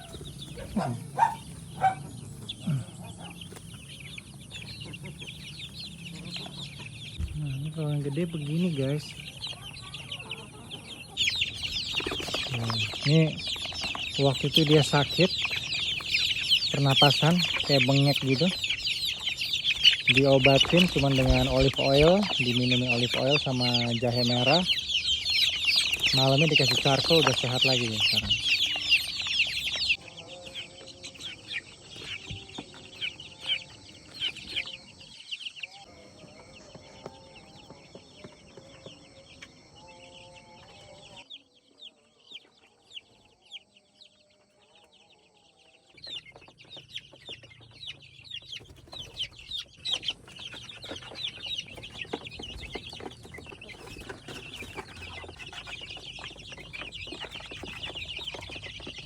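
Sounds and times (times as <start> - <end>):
chickens clucking: 0.0 - 59.0
chicks peeping: 0.0 - 59.0.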